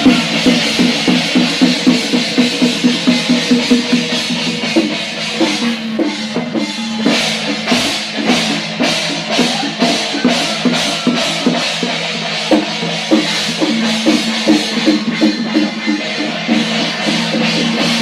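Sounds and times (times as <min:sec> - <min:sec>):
drum beat: 0:00.0 - 0:18.0.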